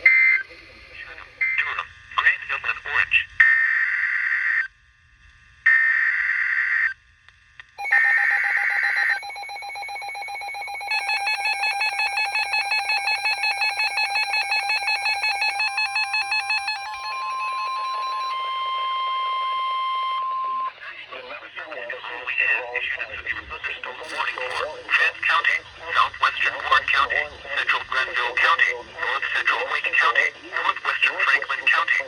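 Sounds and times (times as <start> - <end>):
digital data bursts: 7.8 - 18.8
pulsing electronic alert tone: 7.8 - 20.7
steady warning alarm tone: 7.8 - 20.8.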